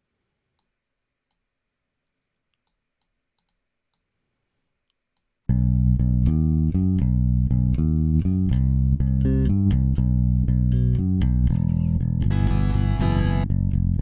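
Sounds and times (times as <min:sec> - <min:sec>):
low pitched instrument notes: 0:05.6 - 0:14.0.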